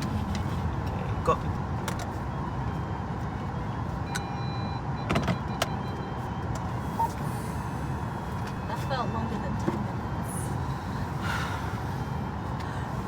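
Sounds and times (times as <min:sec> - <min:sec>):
car engine and road rumble: 0:00.0 - 0:13.0.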